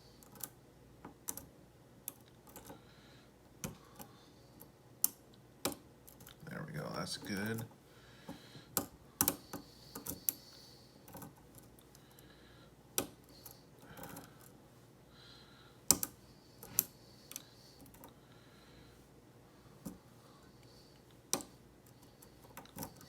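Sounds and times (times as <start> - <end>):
lock pins ticking and clicking: 0.2 - 2.8, 8.7 - 10.4, 15.9 - 18.1.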